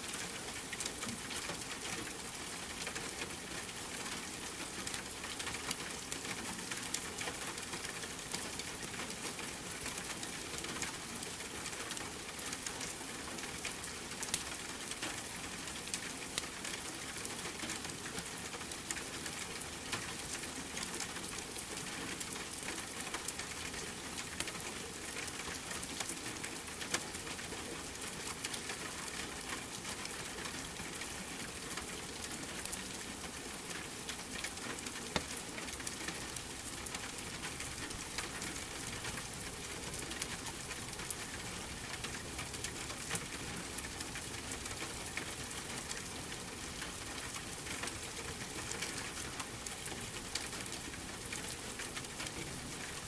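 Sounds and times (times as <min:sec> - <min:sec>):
steady rain: 0:00.0 - 0:53.0.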